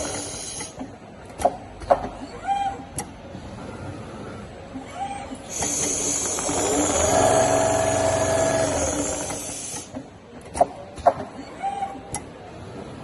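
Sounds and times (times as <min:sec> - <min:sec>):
sewing machine whining: 0:05.4 - 0:09.8.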